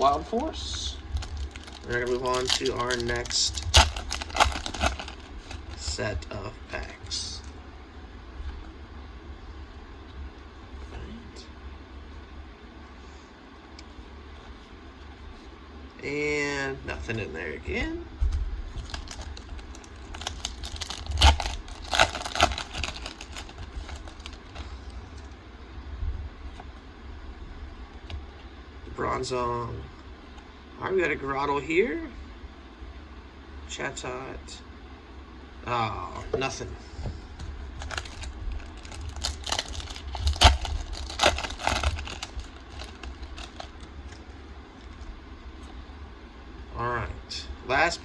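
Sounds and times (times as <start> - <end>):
foil wrapper crinkling: 0.0 - 6.0, 18.7 - 25.3, 37.4 - 45.1.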